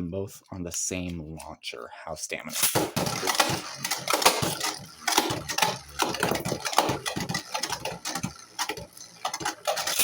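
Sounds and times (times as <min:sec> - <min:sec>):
spinning tops clashing: 0:02.5 - 0:10.0.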